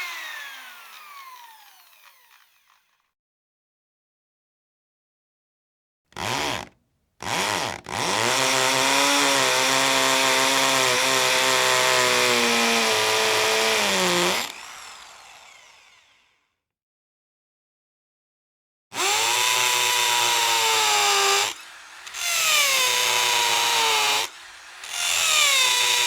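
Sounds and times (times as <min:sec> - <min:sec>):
hammer drill motor: 0:00.0 - 0:03.0, 0:06.2 - 0:16.5, 0:19.0 - 0:26.0.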